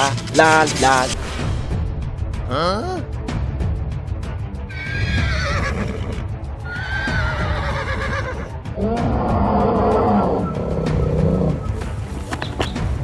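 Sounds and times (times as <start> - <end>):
background music: 0.0 - 13.0
horse whinnying: 4.7 - 8.6.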